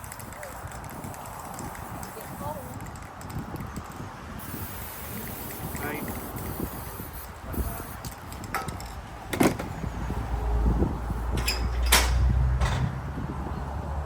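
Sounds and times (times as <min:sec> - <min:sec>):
sharp knocks and clatters: 0:08.3 - 0:09.8, 0:11.3 - 0:13.1.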